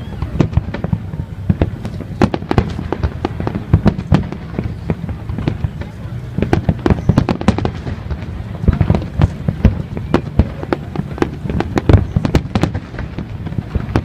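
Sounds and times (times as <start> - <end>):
fireworks bangs and crackling: 0.0 - 14.0.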